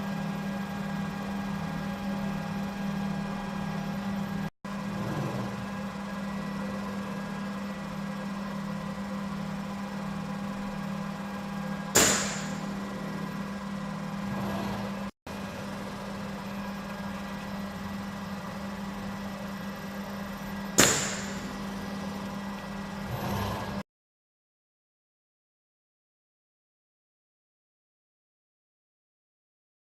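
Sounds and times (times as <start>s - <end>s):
machine hum: 0.0s - 23.8s
pneumatic snap with hiss: 11.9s - 12.7s, 20.8s - 21.6s.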